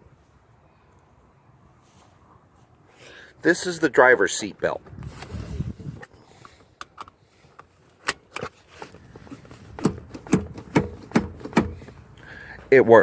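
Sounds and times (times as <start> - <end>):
seat belt clicking: 6.5 - 11.8.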